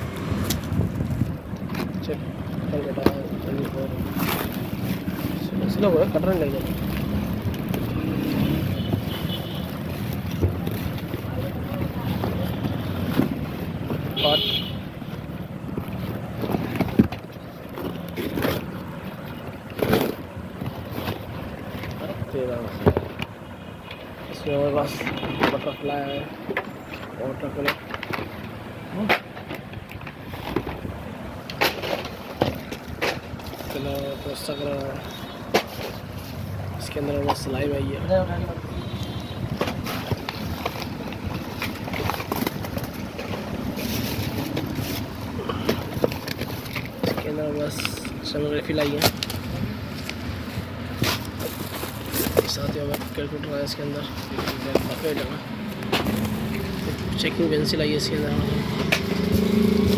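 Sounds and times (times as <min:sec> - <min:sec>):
wind rumble on microphone: 0:00.0 - 0:23.2, 0:38.4 - 0:47.0, 0:49.2 - 0:51.3
handling rustling and scraping: 0:00.0 - 0:59.9.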